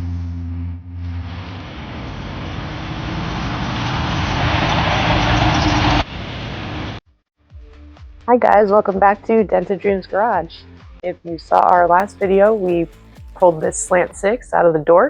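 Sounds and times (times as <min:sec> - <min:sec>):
car engine humming: 0:00.0 - 0:06.1
car passing with road noise: 0:00.0 - 0:07.0.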